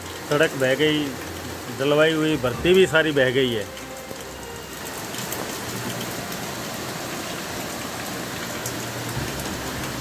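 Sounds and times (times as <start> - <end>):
rain falling: 0.0 - 10.0.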